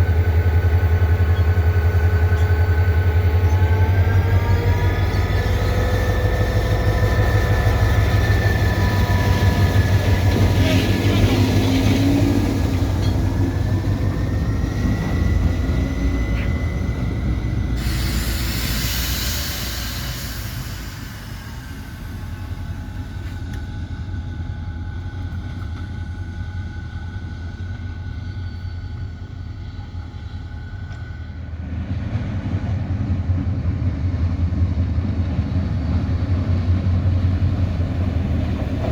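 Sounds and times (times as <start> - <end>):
diesel locomotive engine rumbling: 0.0 - 38.9
loud burst of hiss: 17.8 - 22.7.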